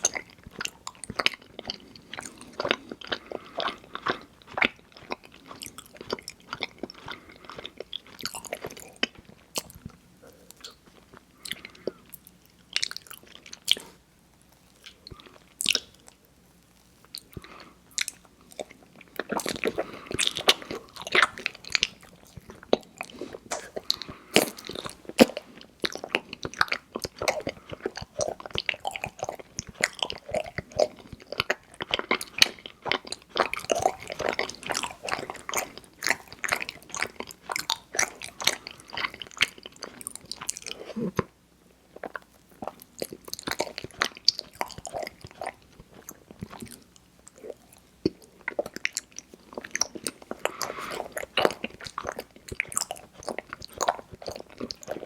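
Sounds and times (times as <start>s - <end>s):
chewing and biting: 0.0s - 16.2s, 16.8s - 41.3s, 41.9s - 55.0s.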